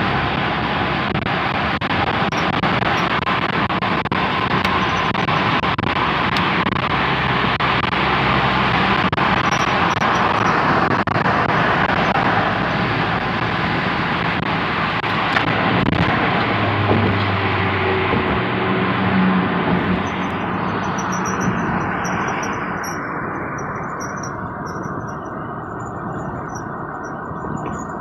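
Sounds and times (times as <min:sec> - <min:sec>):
road and tyre noise: 0:00.0 - 0:28.0
low hum: 0:07.6 - 0:28.0.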